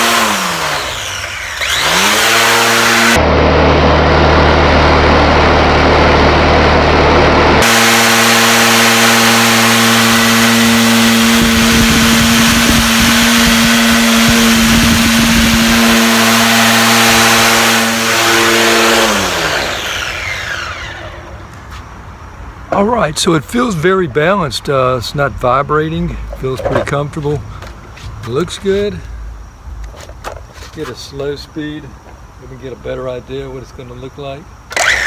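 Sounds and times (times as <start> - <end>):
electric trimmer motor whine: 0.0 - 21.5, 34.7 - 35.0.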